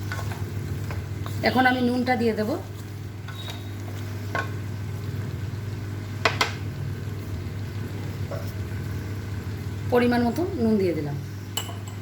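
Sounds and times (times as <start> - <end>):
vegetables sizzling in a pan: 0.0 - 11.6.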